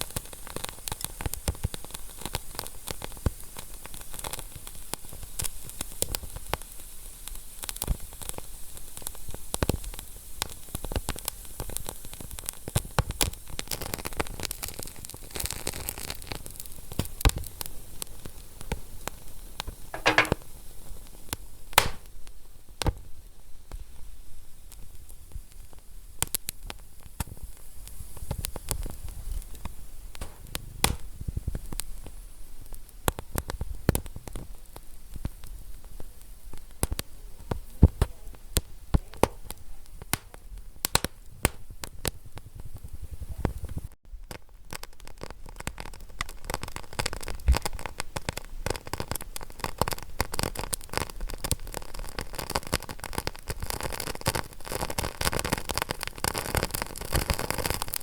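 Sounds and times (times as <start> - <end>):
wood fire crackling and popping: 20.0 - 20.5, 21.8 - 22.1, 26.2 - 58.0.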